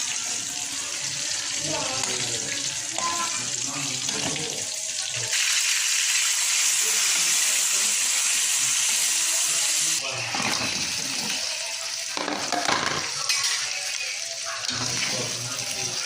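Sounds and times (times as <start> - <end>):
food sizzling: 0.0 - 16.0
utensils clattering: 12.2 - 13.8.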